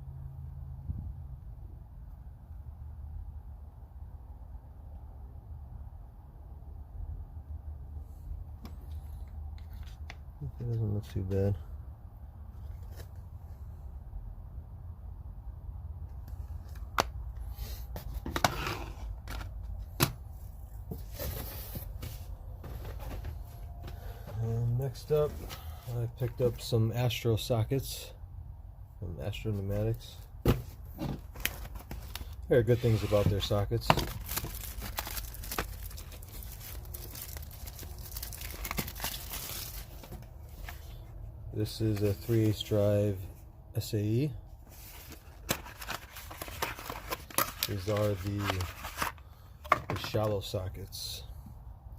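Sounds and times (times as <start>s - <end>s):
packaging crinkling: 31.2s - 40.3s, 45.0s - 49.2s.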